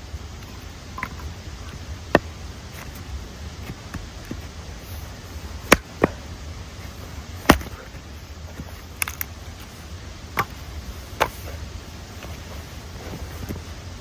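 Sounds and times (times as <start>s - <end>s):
hatchet chopping wood: 5.6s - 6.3s, 7.4s - 8.0s, 8.6s - 9.3s.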